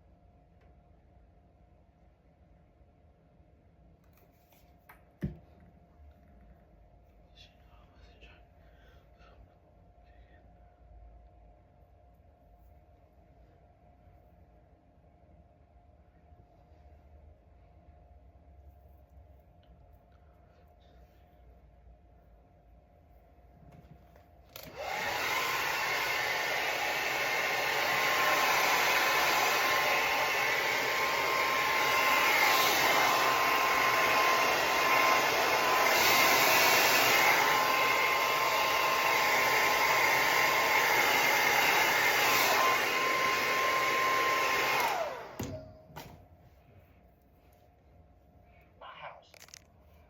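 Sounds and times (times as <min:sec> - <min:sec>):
blow dryer whining motor: 0:24.5 - 0:46.1.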